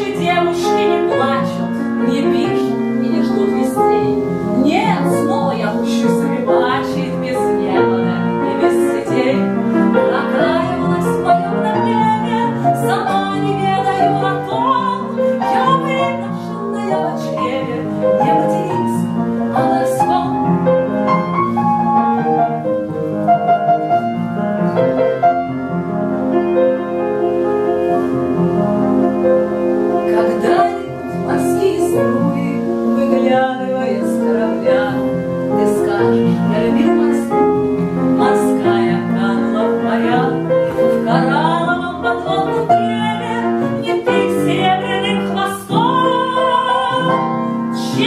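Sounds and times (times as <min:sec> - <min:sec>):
woman singing operatically: 0:00.0 - 0:20.6, 0:30.1 - 0:37.4, 0:38.2 - 0:48.0
piano accompaniment: 0:00.0 - 0:48.0.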